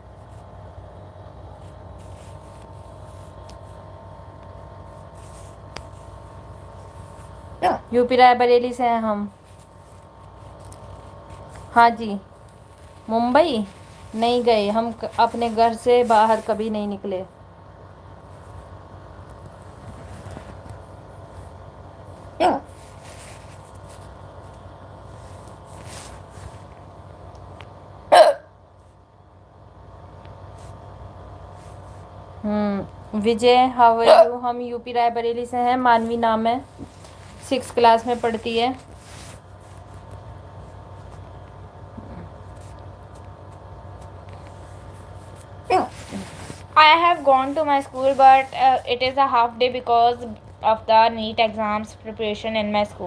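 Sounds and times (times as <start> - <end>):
faint background noise: 0.0 - 53.0
low background hum: 0.0 - 53.0
girl hiccuping: 7.6 - 7.9, 28.1 - 28.6, 34.0 - 34.4.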